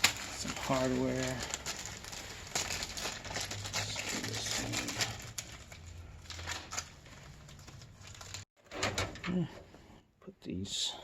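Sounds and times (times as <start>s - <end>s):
plastic packaging rustling: 0.0s - 8.5s.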